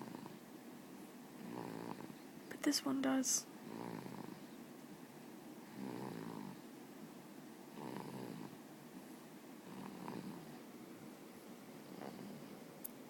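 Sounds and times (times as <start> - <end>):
baby snoring: 0.0 - 0.4, 1.4 - 2.2, 3.6 - 4.5, 5.6 - 6.7, 7.7 - 8.6, 9.6 - 10.5, 11.8 - 12.6.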